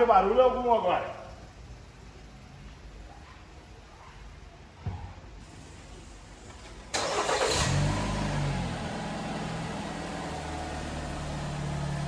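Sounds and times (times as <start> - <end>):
car engine revving and idling: 7.0 - 12.0.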